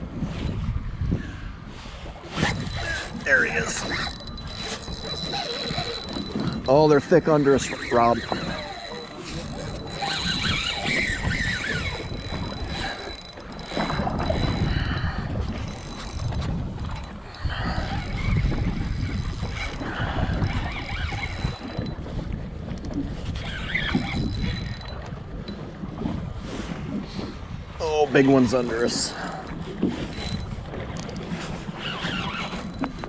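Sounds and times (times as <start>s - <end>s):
water slapping boat hull: 0.0s - 33.0s
wind buffeting microphone: 0.0s - 33.0s.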